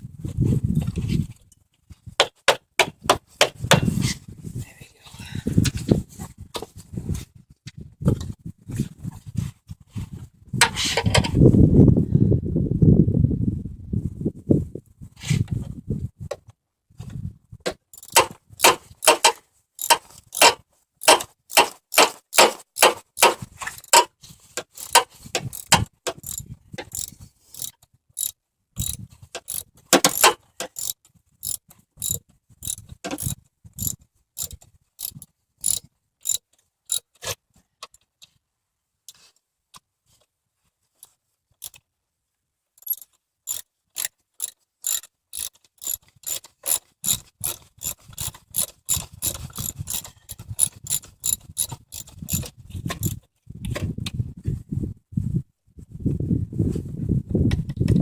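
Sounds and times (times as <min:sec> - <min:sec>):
socket ratchet wrench clicking: 0:17.9 - 0:24.1, 0:24.7 - 0:37.0, 0:41.6 - 0:41.8, 0:42.8 - 0:53.2.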